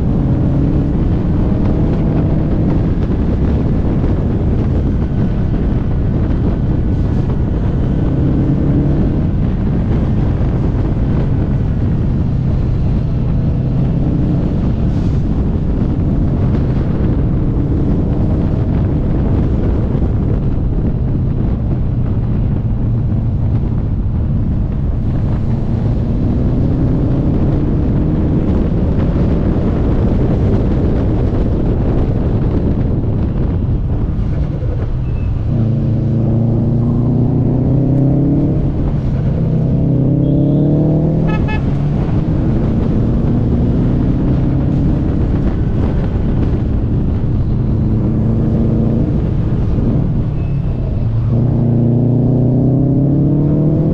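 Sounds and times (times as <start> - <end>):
wind noise on microphone: 0.0 - 53.9
car engine revving: 24.6 - 28.5, 34.1 - 53.9.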